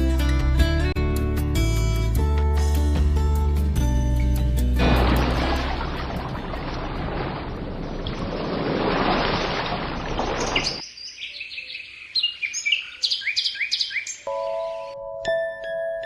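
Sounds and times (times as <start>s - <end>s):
high falling bird chirps: 9.4s - 15.0s.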